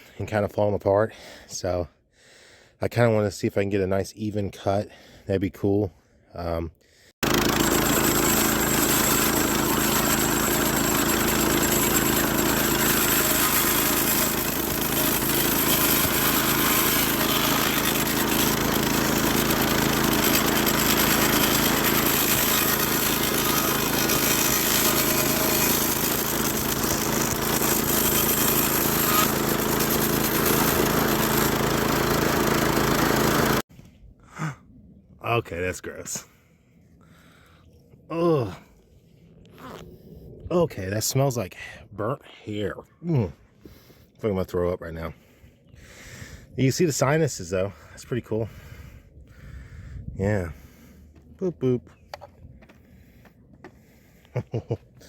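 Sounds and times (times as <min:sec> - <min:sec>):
milling machine cutting bone: 0:07.2 - 0:33.6.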